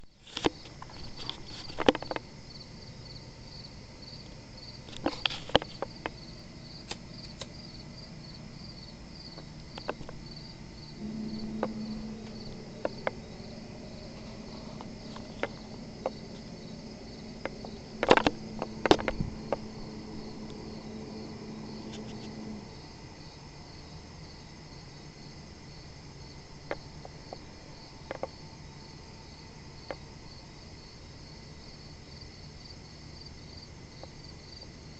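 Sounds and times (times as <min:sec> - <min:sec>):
low droning hum: 0:00.0 - 0:32.2
crickets chirping: 0:00.0 - 0:34.9
sharp clicks or knocks: 0:17.4 - 0:20.6.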